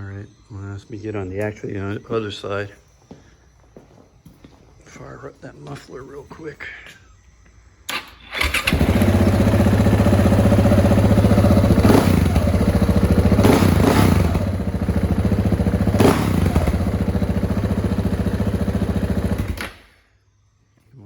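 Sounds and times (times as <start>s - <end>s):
motorcycle engine starting: 7.8s - 19.9s
motorcycle engine idling: 8.3s - 19.6s.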